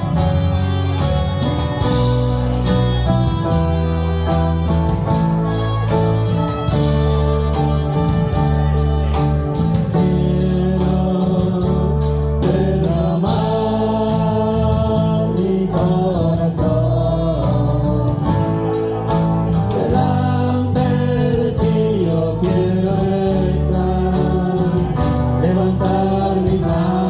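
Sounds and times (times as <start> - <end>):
worship band playing: 0.0 - 27.0
voices singing: 19.6 - 27.0.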